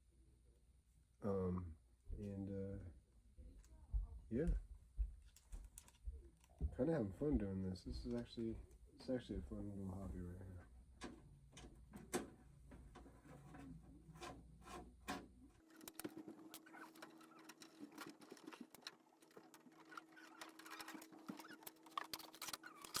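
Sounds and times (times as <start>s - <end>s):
computer parts clicking and rattling: 11.0s - 23.0s.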